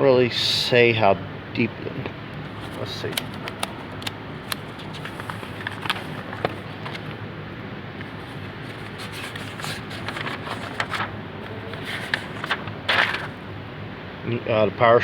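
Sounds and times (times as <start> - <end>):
low background hum: 0.0 - 15.0
rustling: 2.5 - 7.2, 8.0 - 13.4.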